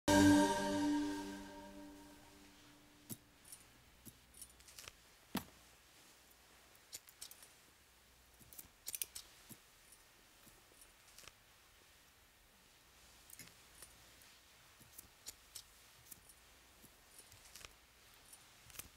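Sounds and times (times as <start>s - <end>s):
music: 0.0s - 2.3s
surgical instruments clicking: 3.1s - 5.0s, 6.8s - 7.6s, 8.4s - 11.4s, 14.8s - 18.9s.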